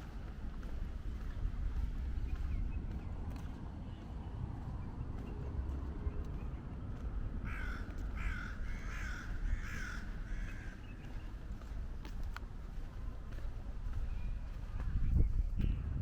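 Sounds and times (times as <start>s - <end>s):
low outdoor rumble: 0.0s - 16.0s
crow cawing: 7.4s - 10.9s.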